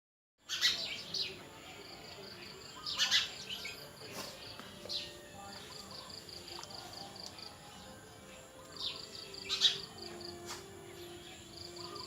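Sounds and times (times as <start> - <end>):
birds calling loudly: 0.4 - 7.9, 8.8 - 12.0.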